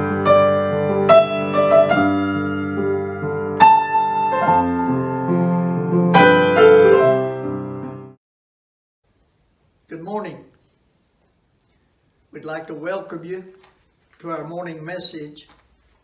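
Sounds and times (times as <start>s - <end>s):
slow piano music: 0.0s - 8.2s.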